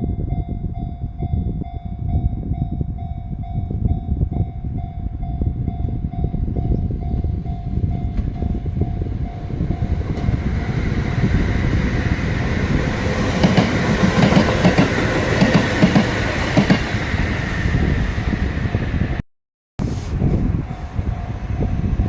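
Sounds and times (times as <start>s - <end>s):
steady train rumble: 0.0s - 19.2s, 19.8s - 22.0s
train wheels clattering over rail joints: 12.9s - 17.0s.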